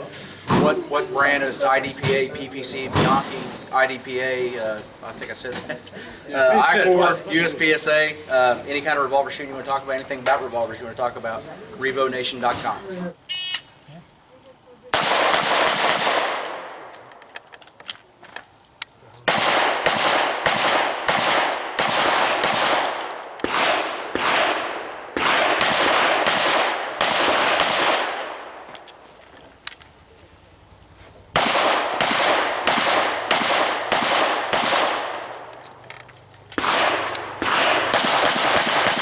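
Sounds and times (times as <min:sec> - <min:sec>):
revolver gunfire: 0:14.9 - 0:16.9, 0:19.2 - 0:28.6, 0:31.3 - 0:35.6, 0:36.5 - 0:39.0.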